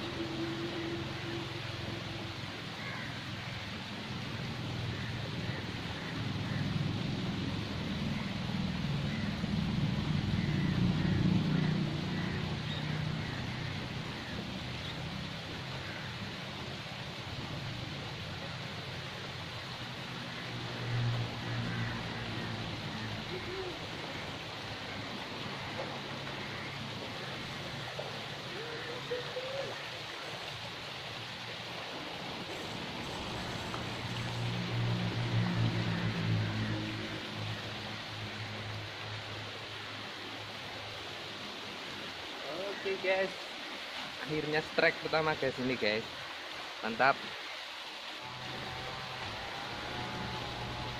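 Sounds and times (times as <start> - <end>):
steady rushing noise: 0.0 - 50.9
low engine hum: 4.0 - 15.7, 32.2 - 39.6, 48.2 - 50.9.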